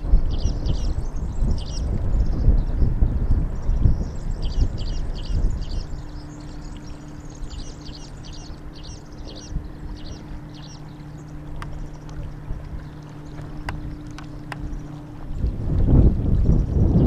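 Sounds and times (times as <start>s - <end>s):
low rumble with hum: 0.0s - 17.0s
faint clicks: 11.5s - 14.8s.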